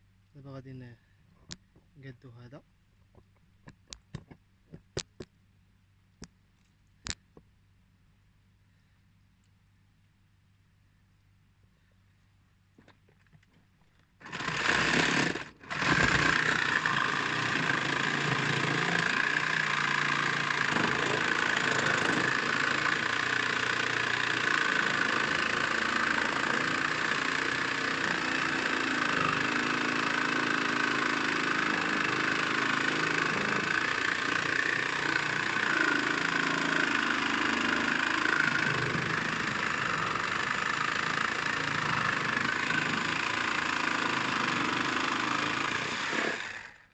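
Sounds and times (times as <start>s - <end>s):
battery cutting tool cutting pipe: 14.2s - 44.9s.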